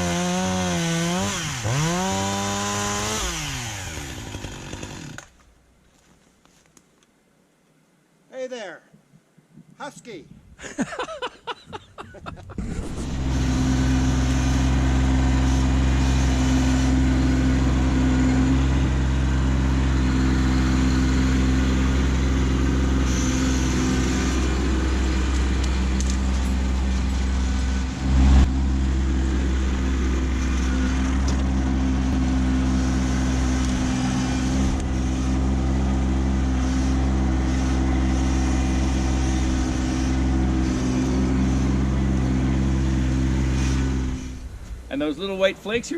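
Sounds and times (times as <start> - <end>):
diesel tractor engine running: 12.6 - 45.9.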